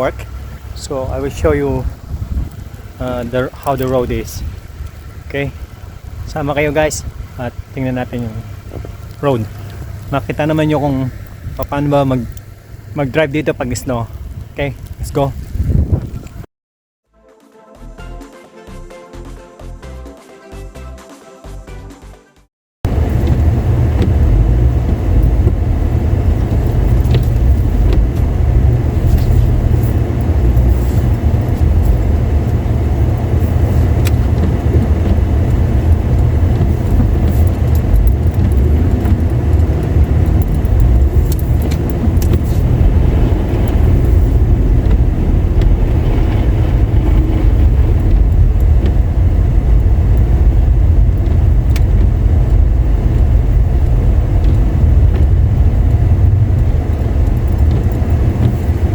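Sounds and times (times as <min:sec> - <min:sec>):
car engine and tyre rumble: 0:00.0 - 0:16.5, 0:22.8 - 0:58.9
faint clicks: 0:08.7 - 0:10.1.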